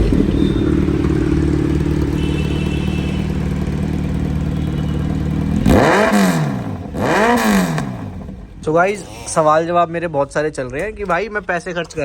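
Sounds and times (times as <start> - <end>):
motorcycle engine idling: 0.0 - 8.6.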